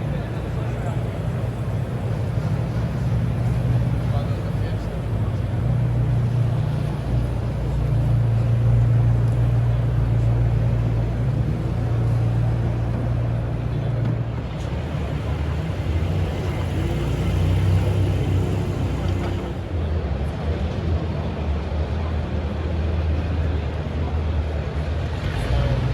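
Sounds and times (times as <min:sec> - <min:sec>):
vehicle engine rumbling: 0:00.0 - 0:20.0.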